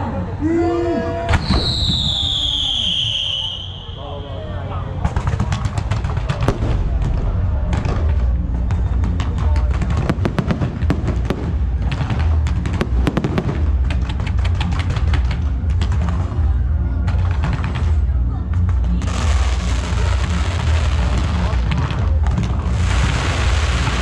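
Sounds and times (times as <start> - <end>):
fireworks crackling and popping: 1.3 - 3.8, 5.0 - 24.0
loud music with heavy bass: 19.0 - 24.0.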